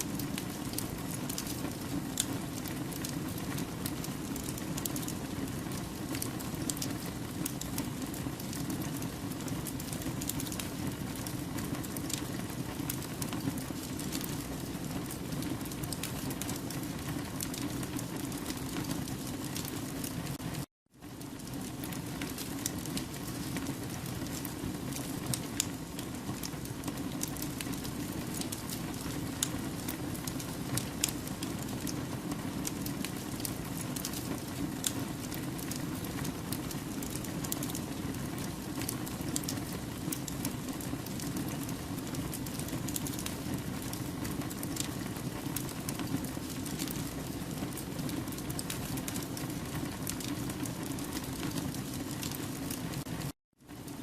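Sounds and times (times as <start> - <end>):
logs crackling and popping: 0.0 - 54.0
wood fire burning: 0.0 - 54.0.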